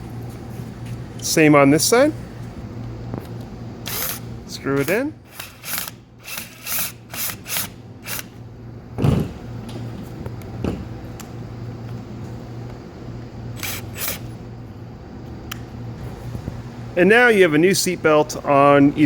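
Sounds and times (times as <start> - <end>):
steady low hum: 0.0 - 19.0
short screwdriver bursts: 3.9 - 4.2, 5.3 - 8.3, 13.6 - 14.2.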